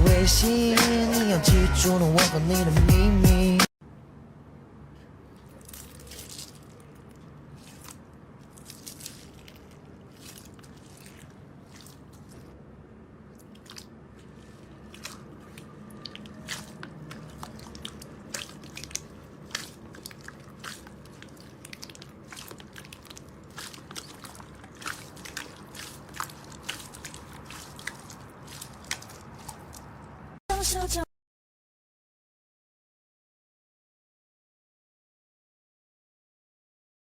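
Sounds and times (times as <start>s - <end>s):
slime squeezed by hand: 5.5s - 12.5s, 13.4s - 30.1s.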